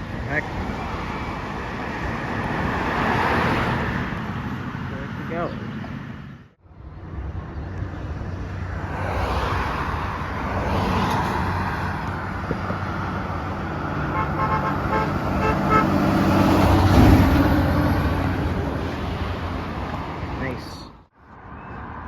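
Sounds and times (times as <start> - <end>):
road traffic rumble: 0.0 - 22.0
vehicle horn tooting: 14.1 - 15.9.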